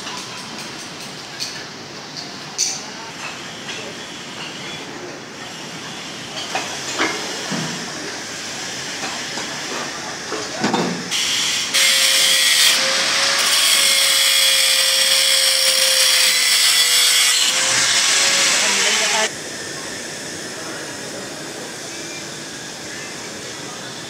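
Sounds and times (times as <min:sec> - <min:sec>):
saw grinding through steel: 0:11.1 - 0:19.3.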